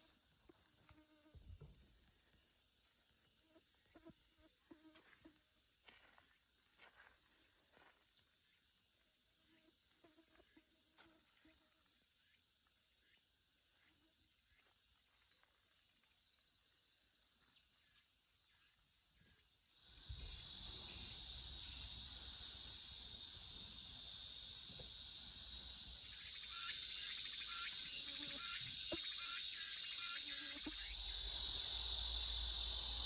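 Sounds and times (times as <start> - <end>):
insect chorus: 0.0 - 33.0.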